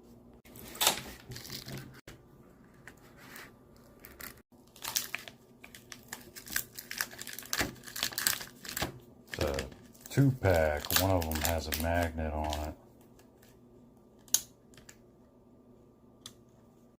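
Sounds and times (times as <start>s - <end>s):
packaging crinkling and tearing: 4.0s - 12.7s.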